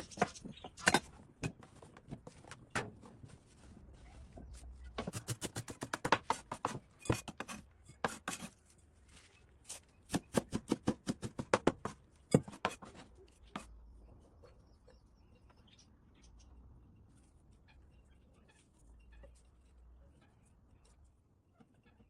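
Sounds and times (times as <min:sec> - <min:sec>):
knife chopping on cutting board: 0:05.0 - 0:08.5.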